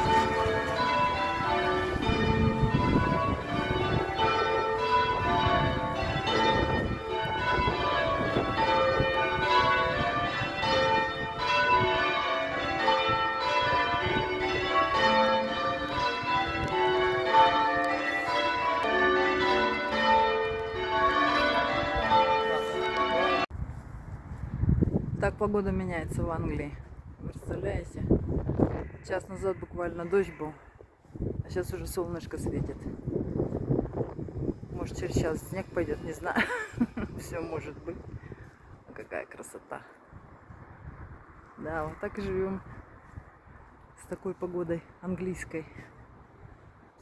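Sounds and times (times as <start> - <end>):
church bells ringing: 0.0 - 23.5.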